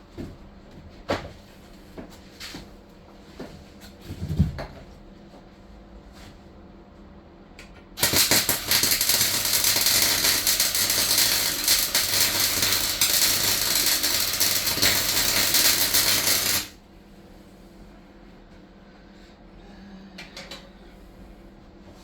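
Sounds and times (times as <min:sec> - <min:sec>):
welding arc crackling: 0:08.0 - 0:16.8.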